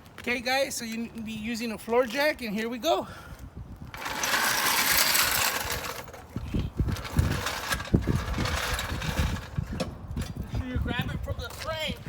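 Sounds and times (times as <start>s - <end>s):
metal jack rolling on pavement: 3.8s - 12.0s.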